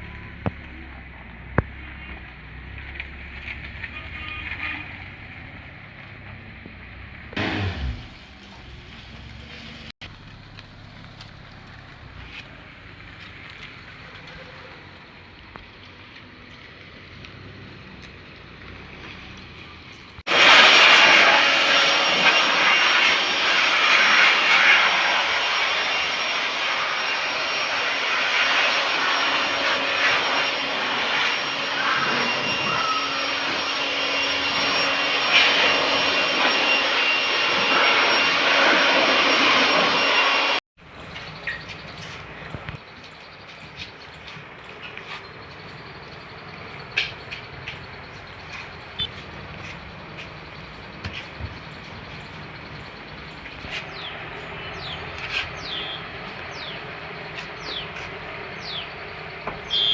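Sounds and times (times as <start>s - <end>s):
high-pressure water jet hissing: 20.3s - 40.6s.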